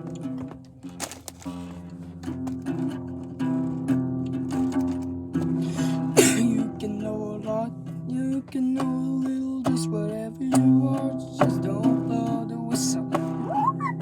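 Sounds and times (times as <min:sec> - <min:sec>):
acoustic guitar strumming: 0:00.0 - 0:14.0
sliding melody: 0:13.4 - 0:14.0.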